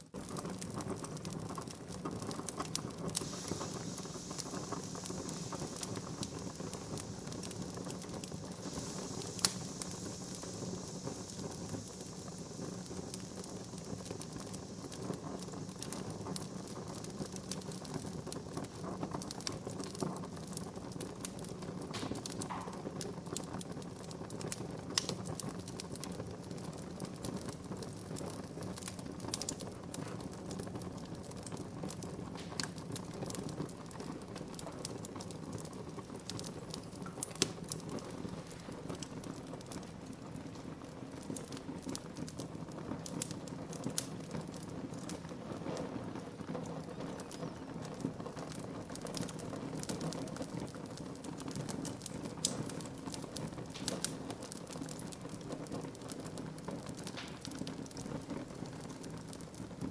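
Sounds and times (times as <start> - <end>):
soft hiss: 0.0 - 59.9
wood fire crackling: 0.0 - 59.9.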